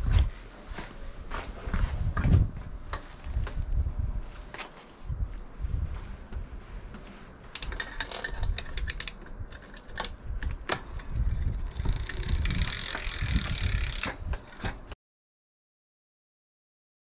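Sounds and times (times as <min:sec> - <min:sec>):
bicycle freewheel ticking: 0:07.6 - 0:10.0, 0:10.9 - 0:14.1.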